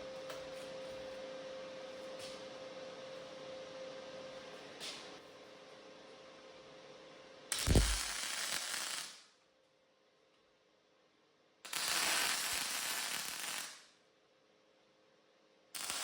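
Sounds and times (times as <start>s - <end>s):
arc welding crackling hiss: 7.5s - 9.3s, 11.7s - 13.9s, 15.8s - 16.0s.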